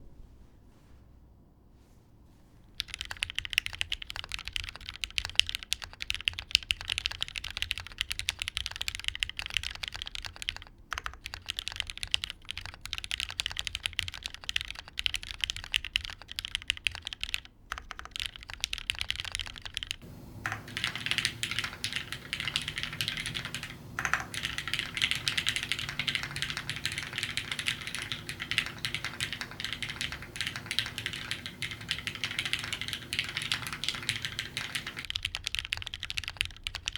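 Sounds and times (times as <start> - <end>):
mechanical keyboard typing: 2.8 - 36.9
steady low hum: 20.0 - 35.1.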